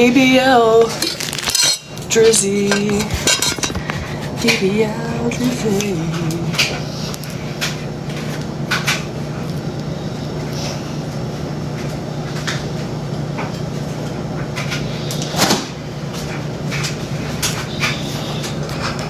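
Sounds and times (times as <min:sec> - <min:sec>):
steady low hum: 0:00.0 - 0:19.0
kitchen items knocking and clicking: 0:00.8 - 0:04.7.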